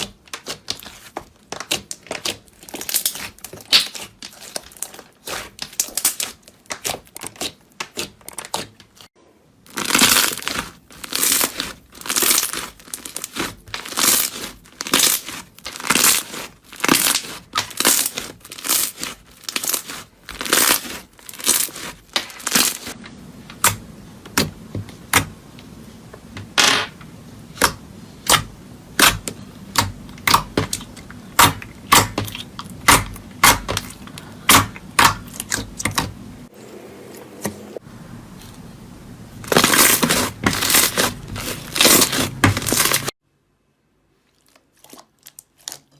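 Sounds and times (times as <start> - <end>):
crunchy slime squeezed by hand: 9.7 - 23.0, 39.4 - 43.1.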